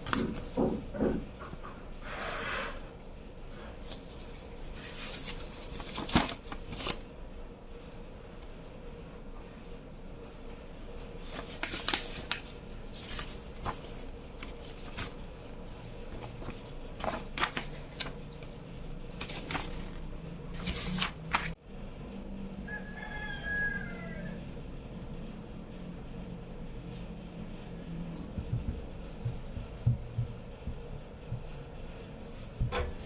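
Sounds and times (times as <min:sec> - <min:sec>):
low steady hum: 0:02.8 - 0:33.0.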